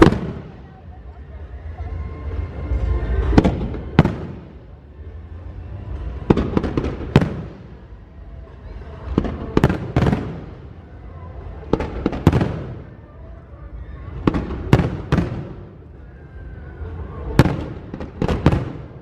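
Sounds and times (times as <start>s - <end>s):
fireworks bangs: 0.0s - 0.8s, 3.2s - 4.8s, 6.1s - 8.0s, 9.0s - 13.0s, 14.1s - 15.9s, 17.2s - 19.0s.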